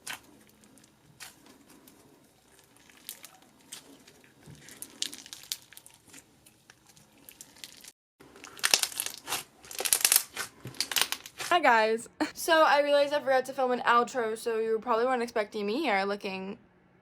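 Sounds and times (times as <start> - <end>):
slime crackling: 0.0 - 11.7.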